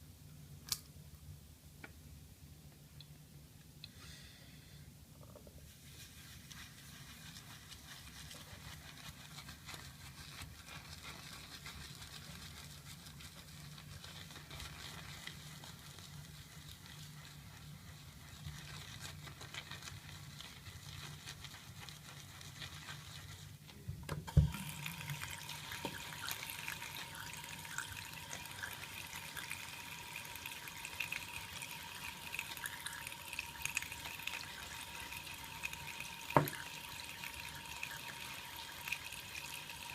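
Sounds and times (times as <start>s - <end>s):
faint steady hum: 0.0s - 39.9s
water tap running into sink: 24.3s - 39.9s.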